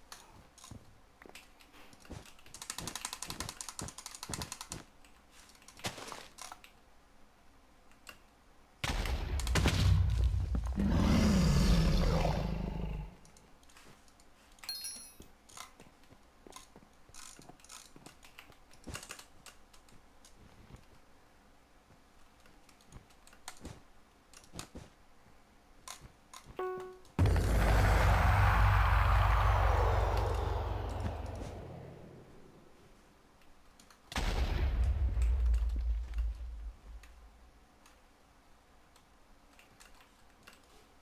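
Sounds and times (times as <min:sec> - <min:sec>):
loud low rumbling: 0:09.3 - 0:12.7, 0:27.2 - 0:32.8.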